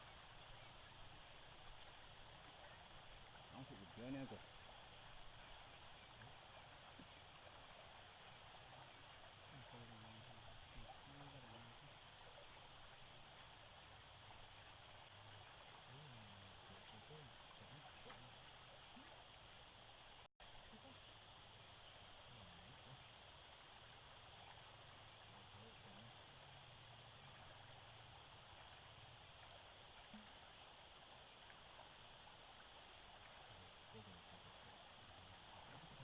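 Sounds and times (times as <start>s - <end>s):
distant low voices: 0.1s - 12.9s, 15.0s - 19.1s, 25.2s - 26.5s, 33.3s - 36.0s.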